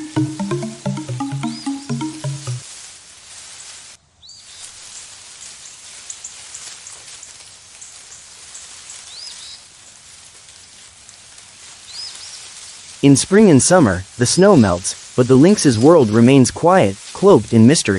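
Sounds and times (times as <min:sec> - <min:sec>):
rain-like nature hiss: 0:00.0 - 0:17.9.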